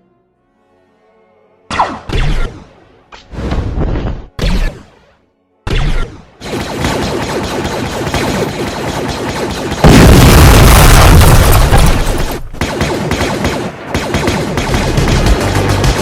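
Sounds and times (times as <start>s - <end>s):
rapid gunshots: 5.7s - 16.0s
loud explosion: 9.8s - 12.3s.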